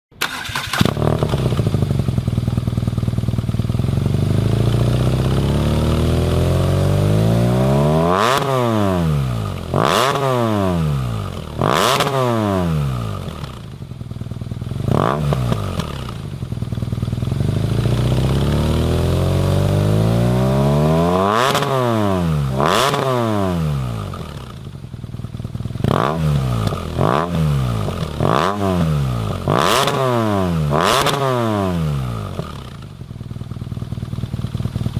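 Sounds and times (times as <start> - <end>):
motorcycle engine revving: 0.2 - 34.9.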